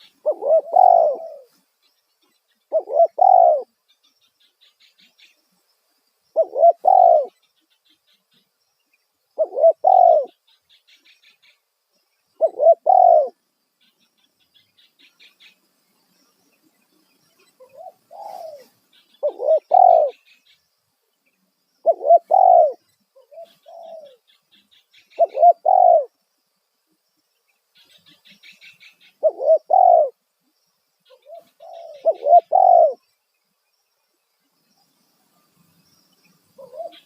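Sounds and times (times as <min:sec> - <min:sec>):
dove cooing: 0:00.0 - 0:01.5, 0:02.7 - 0:03.7, 0:06.3 - 0:07.4, 0:09.4 - 0:10.4, 0:12.4 - 0:13.4, 0:17.6 - 0:20.2, 0:21.8 - 0:24.2, 0:25.1 - 0:26.1, 0:29.2 - 0:30.2, 0:31.1 - 0:33.0, 0:36.6 - 0:37.0
small birds chirping: 0:00.0 - 0:37.0.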